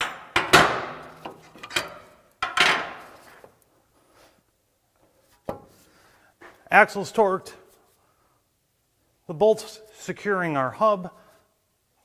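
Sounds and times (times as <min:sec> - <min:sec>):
metal tools clanking: 0:01.5 - 0:02.9.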